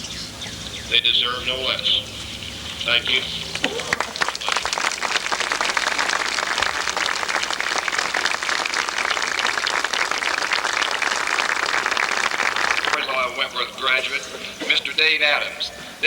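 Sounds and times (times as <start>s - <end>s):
audience applauding: 3.5s - 14.1s.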